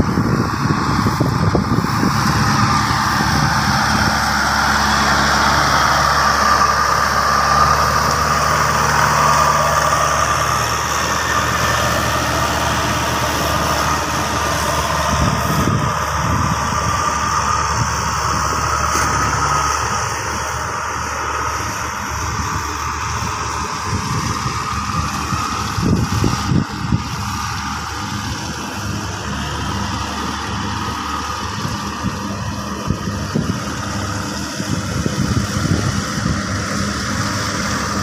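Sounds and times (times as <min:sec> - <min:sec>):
combine harvester running: 0:00.0 - 0:38.0.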